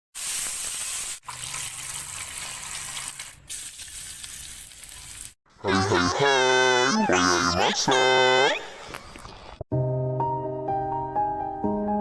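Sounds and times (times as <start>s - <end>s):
food sizzling in a pan: 0.2s - 1.6s.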